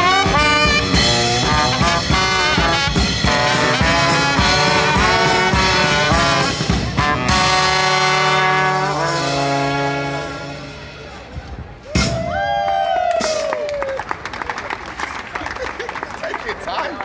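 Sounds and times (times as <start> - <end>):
brass band playing jazzy tune: 0.0 - 11.3.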